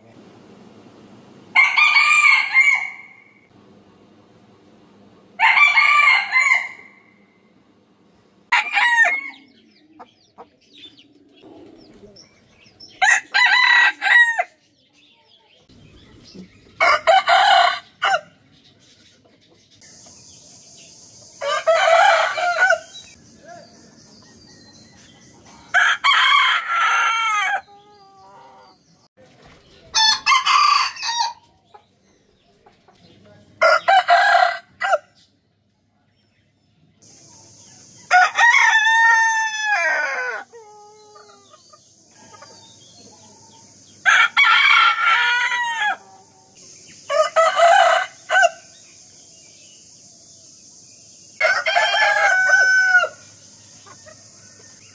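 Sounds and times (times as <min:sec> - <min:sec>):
roosters crowing: 0:01.4 - 0:03.6, 0:05.3 - 0:07.4, 0:08.5 - 0:10.1, 0:12.6 - 0:14.7, 0:16.7 - 0:18.4, 0:21.4 - 0:29.0, 0:29.9 - 0:31.8, 0:33.6 - 0:35.2, 0:37.8 - 0:48.8, 0:51.3 - 0:54.9
steady hiss: 0:19.8 - 0:24.2, 0:37.0 - 0:39.1.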